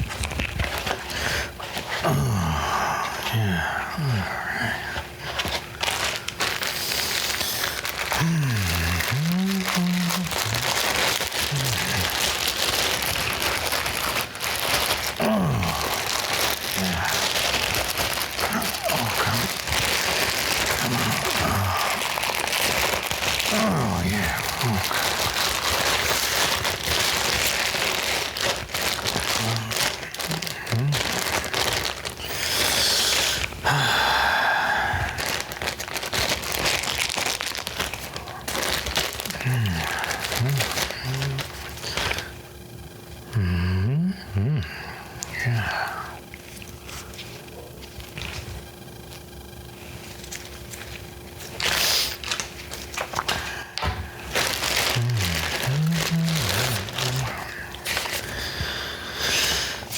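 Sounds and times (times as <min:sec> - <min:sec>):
plastic packaging crinkling: 0:00.0 - 0:43.3, 0:45.2 - 0:59.9
breathy hiss: 0:00.9 - 0:47.8, 0:51.1 - 0:59.9
low falling grunt: 0:15.2 - 0:17.4, 0:23.4 - 0:25.5, 0:54.8 - 0:57.6.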